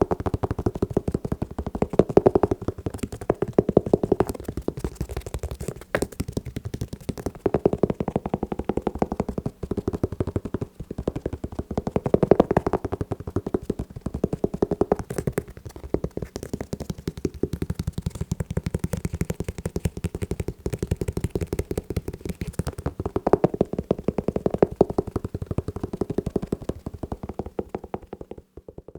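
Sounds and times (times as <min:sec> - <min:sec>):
fingers tapping on shoes: 0:00.0 - 0:28.9.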